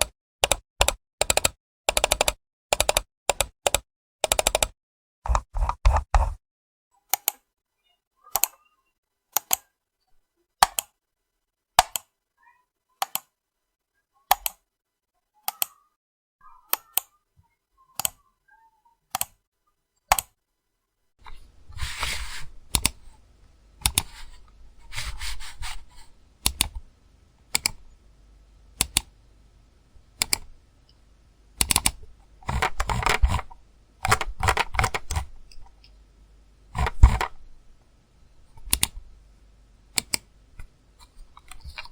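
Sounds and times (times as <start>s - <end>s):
computer mouse clicks: 0.0s - 4.7s, 7.1s - 7.4s, 8.3s - 8.5s, 9.4s - 9.6s, 10.6s - 10.9s, 11.8s - 12.1s, 13.0s - 13.3s, 14.3s - 14.6s, 18.0s - 18.2s, 19.1s - 19.4s, 20.1s - 20.3s, 21.2s - 23.2s, 23.8s - 26.9s, 27.5s - 27.9s, 28.8s - 29.2s, 30.2s - 31.0s, 31.6s - 36.0s, 36.8s - 37.4s, 38.6s - 39.0s, 40.0s - 41.9s
low background hum: 21.2s - 41.9s.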